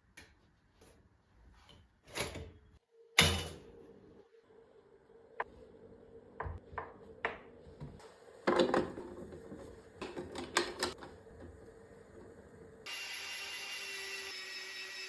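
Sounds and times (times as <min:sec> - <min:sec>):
kitchen items clicking and knocking: 0:08.4 - 0:11.2
kitchen items clattering: 0:08.4 - 0:11.6.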